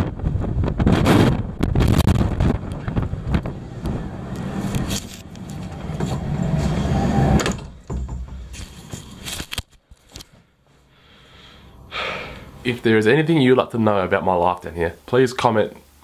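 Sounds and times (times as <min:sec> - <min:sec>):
wind buffeting microphone: 0:00.0 - 0:08.5
clicks and knocks: 0:07.4 - 0:10.3.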